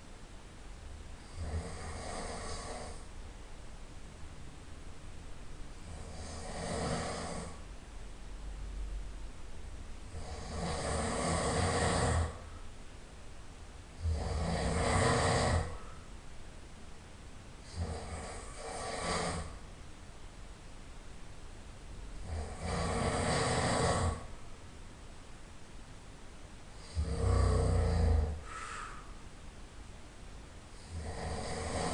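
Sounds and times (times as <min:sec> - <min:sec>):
quiet breathing: 0:01.2 - 0:03.2, 0:05.8 - 0:07.7, 0:10.1 - 0:12.8, 0:13.9 - 0:16.3, 0:17.6 - 0:19.8, 0:22.2 - 0:24.5, 0:26.7 - 0:29.4, 0:30.7 - 0:31.9
man snoring: 0:01.3 - 0:03.1, 0:05.9 - 0:07.6, 0:10.1 - 0:12.5, 0:14.0 - 0:15.9, 0:17.7 - 0:19.6, 0:22.2 - 0:24.3, 0:26.8 - 0:29.0, 0:30.8 - 0:31.9.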